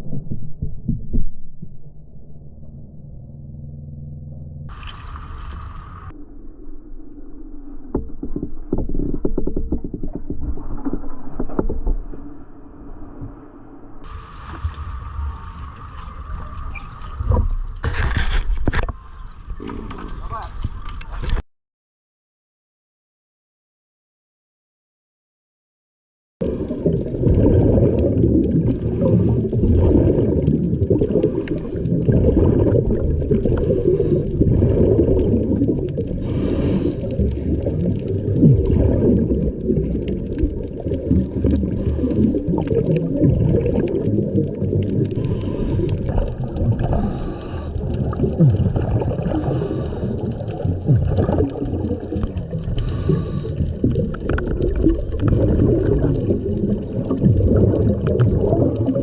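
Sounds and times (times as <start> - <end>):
diver breathing through regulator: 28.5 - 30.3, 30.9 - 35.4, 36.1 - 37.7, 41.5 - 42.8, 45.0 - 51.4, 52.2 - 54.1.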